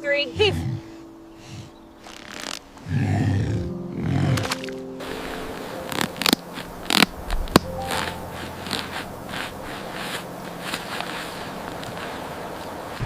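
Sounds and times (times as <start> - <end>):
faint steady tones: 0.0 - 13.0
hauling gear clicking and scraping: 2.0 - 2.8, 4.4 - 13.0.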